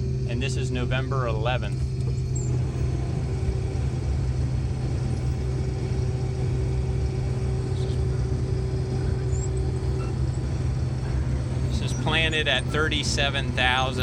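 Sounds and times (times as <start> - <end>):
combine harvester droning: 0.0 - 14.0.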